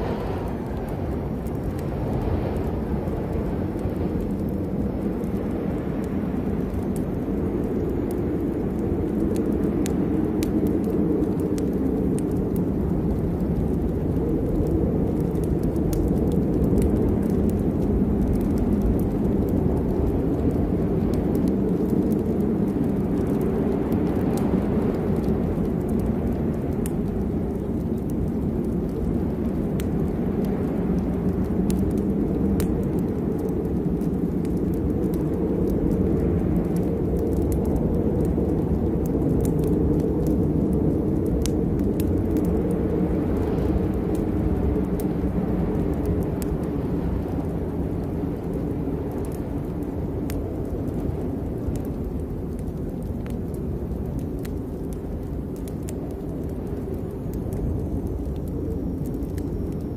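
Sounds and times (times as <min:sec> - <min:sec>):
low rumble: 0:00.0 - 0:51.2
rain falling: 0:00.0 - 0:59.9
raindrop ticks: 0:00.1 - 0:59.9.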